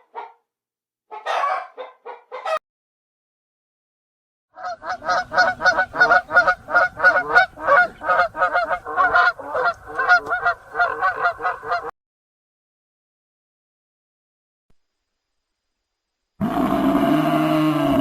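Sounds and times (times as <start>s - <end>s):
goose honking: 4.6s - 11.9s.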